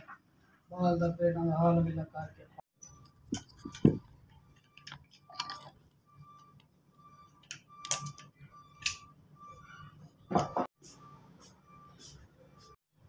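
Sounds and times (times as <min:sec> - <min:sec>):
small parts and tools clicking: 0:02.8 - 0:06.7, 0:07.4 - 0:09.0.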